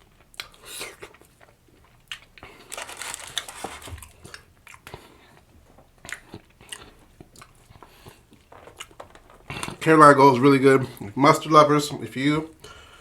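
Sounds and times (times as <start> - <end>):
person biting and chewing: 0.3 - 9.8.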